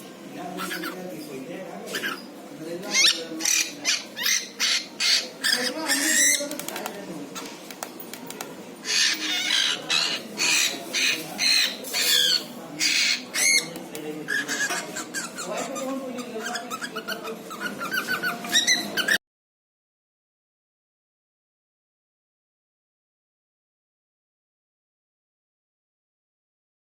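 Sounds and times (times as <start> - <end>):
cockatiel calling: 0.6 - 1.0, 1.9 - 2.3, 2.9 - 6.5, 8.8 - 13.7, 14.3 - 19.2
cockatiel warbling chirps: 3.0 - 6.4, 8.8 - 13.7.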